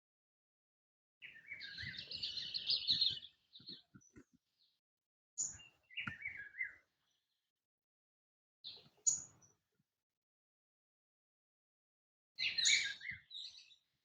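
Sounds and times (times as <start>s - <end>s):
songbird singing: 1.2s - 4.8s, 5.4s - 7.4s, 8.7s - 9.6s, 12.4s - 14.0s.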